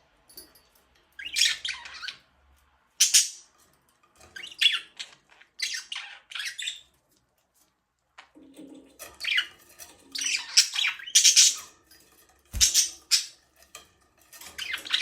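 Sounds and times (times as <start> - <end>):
budgerigars chirping: 4.4 - 6.9, 10.1 - 11.6, 12.6 - 13.4.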